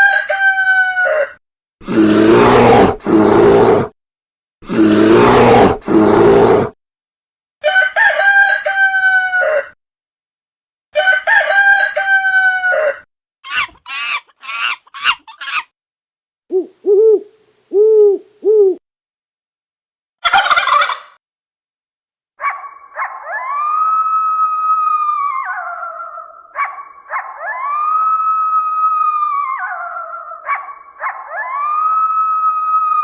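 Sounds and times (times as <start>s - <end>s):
rooster crowing: 0.0s - 1.4s, 7.6s - 9.8s, 11.0s - 15.6s, 23.0s - 26.5s
animal long drawn-out call: 1.0s - 3.9s, 4.6s - 6.8s.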